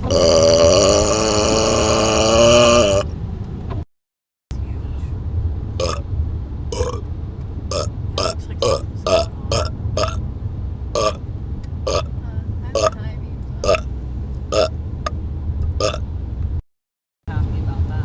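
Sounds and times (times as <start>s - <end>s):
man burping: 0.0s - 3.1s, 5.8s - 6.0s, 6.7s - 7.0s, 7.7s - 10.2s, 11.0s - 11.2s, 11.9s - 12.1s, 13.6s - 13.9s, 15.8s - 16.0s
car driving low rumble: 0.0s - 3.9s, 4.5s - 16.6s, 17.3s - 18.0s.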